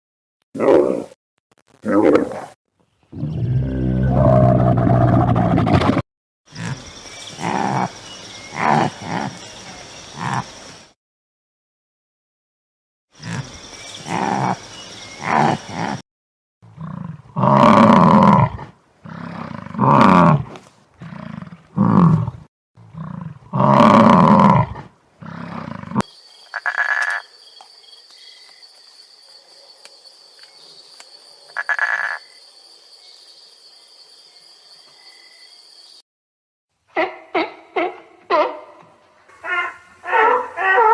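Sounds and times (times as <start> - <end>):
deep animal roars: 3.1 - 6.0, 16.7 - 26.0.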